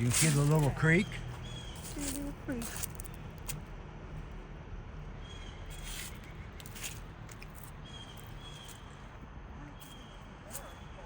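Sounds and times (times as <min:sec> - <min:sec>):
footsteps: 0:00.0 - 0:03.6.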